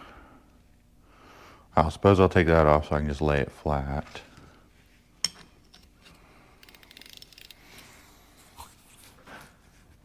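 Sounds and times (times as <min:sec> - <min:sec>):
ratchet wrench clicking: 0:06.6 - 0:07.6.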